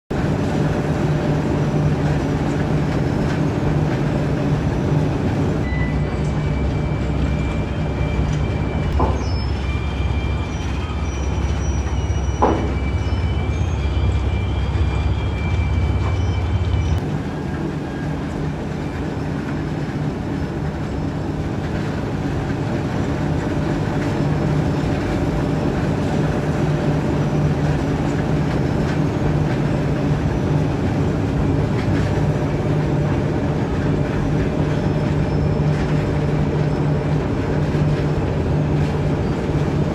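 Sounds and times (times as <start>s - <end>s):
excavator hum and rumble: 0.1s - 39.9s
high metallic squeals: 5.6s - 17.0s.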